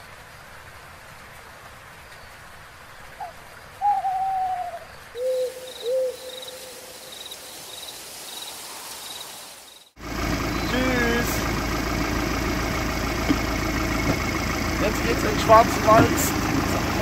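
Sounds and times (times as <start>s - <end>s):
owl hooting: 3.2s - 7.5s.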